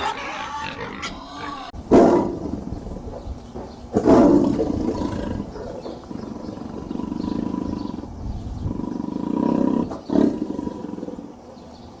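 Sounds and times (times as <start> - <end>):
tiger roaring: 0.0 - 2.3, 4.2 - 11.4.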